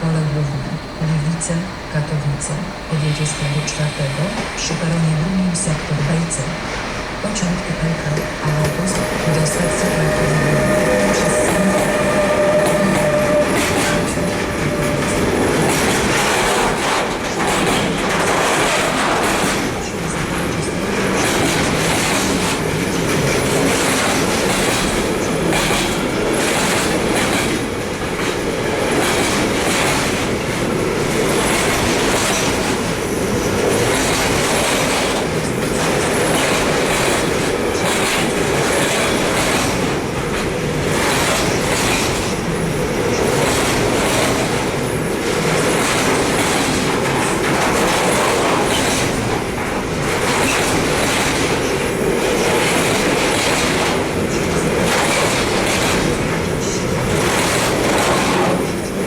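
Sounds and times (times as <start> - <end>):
train wheels rumbling on rails: 0.0 - 59.0
wheels clacking over rail joints: 8.0 - 59.0
thin steady squeal: 8.2 - 15.2.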